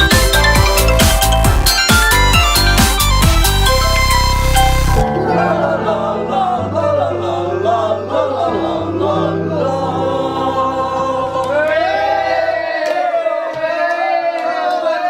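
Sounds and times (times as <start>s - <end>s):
held bass notes: 0.0s - 12.2s
voices singing in harmony: 5.0s - 15.0s.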